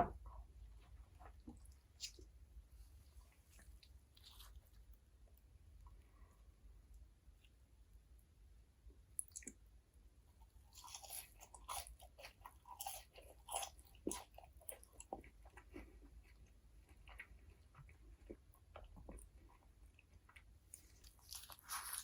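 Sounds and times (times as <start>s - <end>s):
crunchy bites and chewing: 10.4s - 22.0s.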